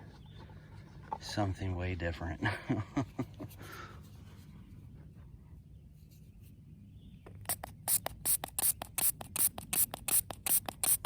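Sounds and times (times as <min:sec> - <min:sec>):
crisp rubbing strokes on coin: 0:07.5 - 0:11.0.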